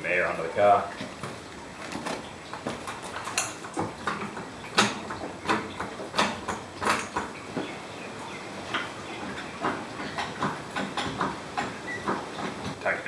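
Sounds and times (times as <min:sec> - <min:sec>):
floor jack pumping clacks: 0:02.6 - 0:07.8, 0:08.6 - 0:13.0.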